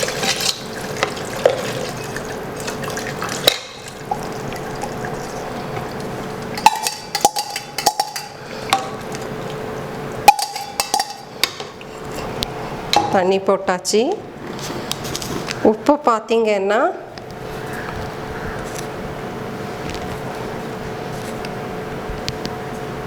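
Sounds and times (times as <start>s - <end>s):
water pouring into pot: 0.0s - 12.0s
metallic clinks of tumbler and pot: 6.5s - 9.0s, 10.3s - 12.3s.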